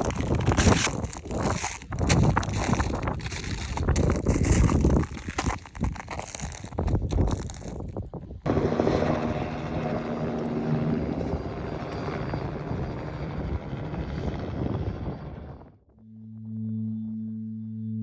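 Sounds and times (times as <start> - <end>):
crunching: 0.0 - 8.0
wind: 0.0 - 15.9
aircraft engine drone: 8.5 - 18.0.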